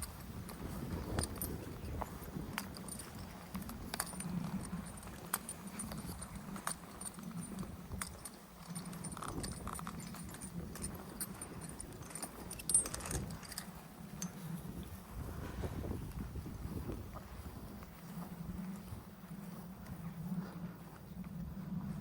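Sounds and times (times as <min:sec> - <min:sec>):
dog leads and tags jingling: 0:00.0 - 0:15.1.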